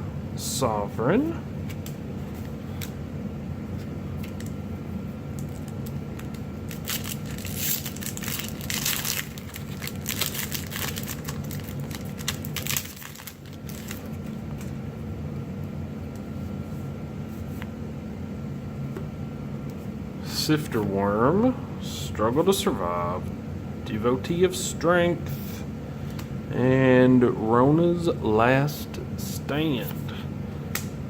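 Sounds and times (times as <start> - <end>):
steady low hum: 0.0 - 31.0
foil wrapper tearing and crinkling: 5.4 - 14.7.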